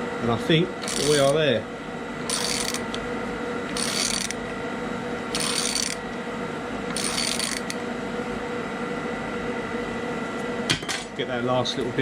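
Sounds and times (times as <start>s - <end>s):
ratchet wrench clicking: 2.3s - 2.8s, 3.8s - 4.3s, 5.4s - 6.0s, 6.9s - 7.8s.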